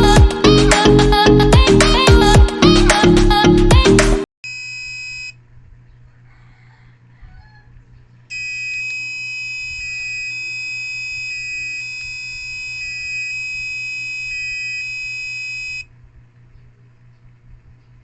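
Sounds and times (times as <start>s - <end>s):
two-tone buzzer alarm: 4.5s - 5.4s, 8.3s - 15.9s.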